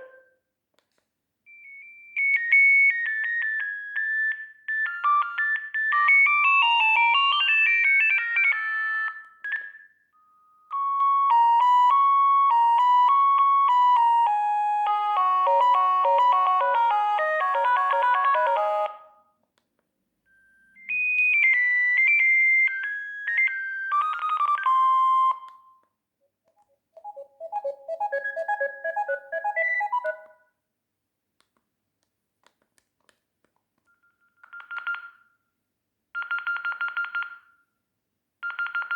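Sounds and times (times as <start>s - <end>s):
phone ringtone melodies: 2.2s - 9.6s, 10.8s - 19.1s, 20.9s - 25.4s, 27.0s - 30.4s.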